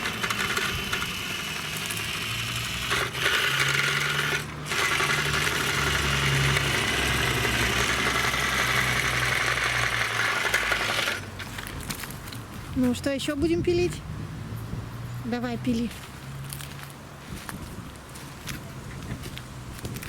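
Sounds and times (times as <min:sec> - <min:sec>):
toy chainsaw motor buzz: 0:00.0 - 0:11.3.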